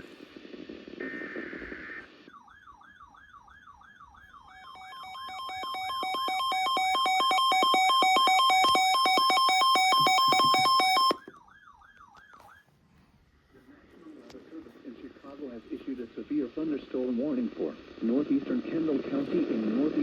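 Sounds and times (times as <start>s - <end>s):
warbling electronic siren: 1.7s - 12.6s
rapid two-tone beeping: 4.6s - 11.2s.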